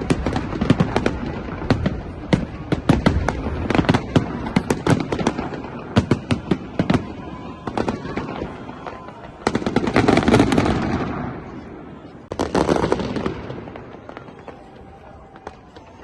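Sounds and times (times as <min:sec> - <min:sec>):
fireworks sharp bangs: 0:00.0 - 0:16.0
low rumble of fireworks: 0:00.0 - 0:16.0.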